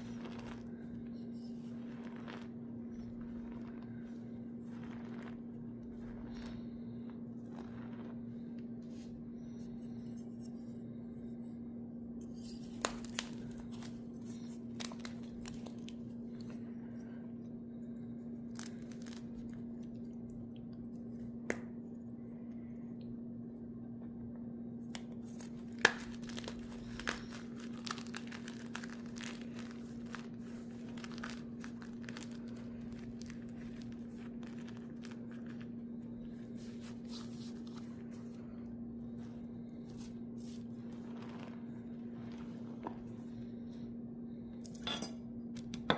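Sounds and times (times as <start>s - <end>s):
chalk crushing and crackling: 0.0s - 10.7s, 25.2s - 43.8s
steady low hum: 0.0s - 45.9s.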